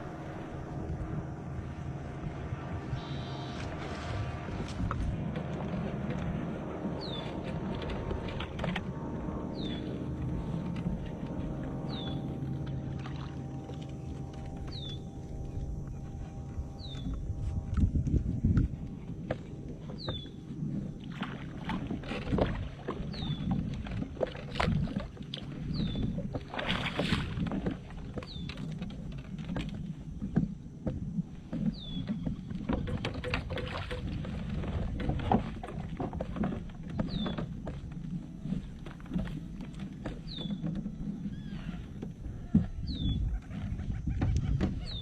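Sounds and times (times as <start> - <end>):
low rumble of wind or water: 0.0 - 45.0
knocks and clicks on kayak: 21.7 - 45.0.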